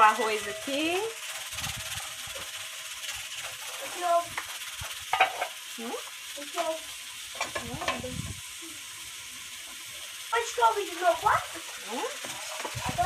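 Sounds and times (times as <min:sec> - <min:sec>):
onion sizzling in oil: 0:00.0 - 0:13.0
spoon scraping and knocking pot: 0:05.1 - 0:05.6.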